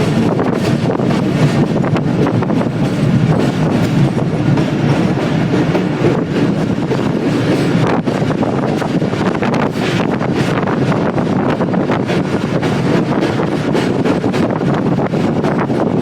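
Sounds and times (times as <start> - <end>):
train wheels rumbling on rails: 0.0 - 16.0.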